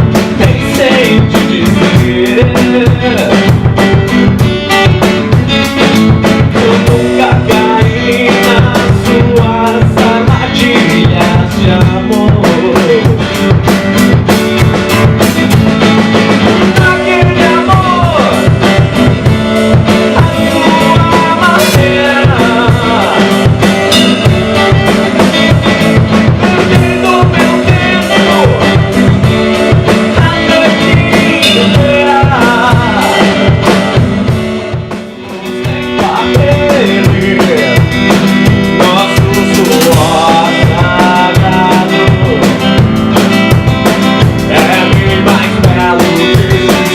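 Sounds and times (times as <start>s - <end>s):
drum kit beat: 0.0s - 46.9s
guitar: 0.0s - 46.9s
sliding melody line: 0.0s - 46.9s.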